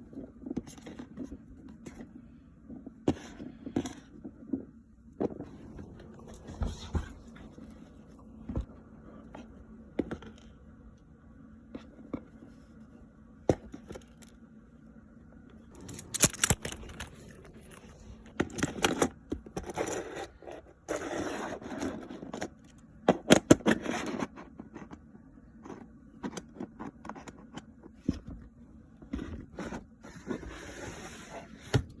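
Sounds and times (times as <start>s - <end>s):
plastic toys clicking and knocking: 15.7s - 17.2s.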